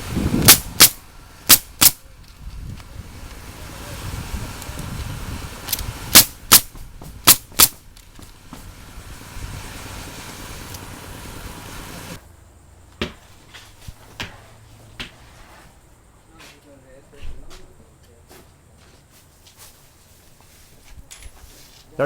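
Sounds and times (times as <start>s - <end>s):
pneumatic nailer firing: 0.0s - 2.1s, 2.8s - 11.0s
steady air hiss: 0.0s - 12.6s.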